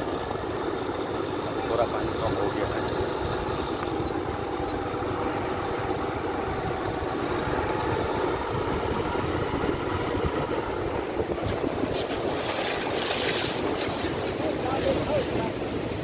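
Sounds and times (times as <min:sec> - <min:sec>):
motorcycle engine running: 0:00.0 - 0:16.0
wind rumbling on microphone: 0:00.0 - 0:16.0.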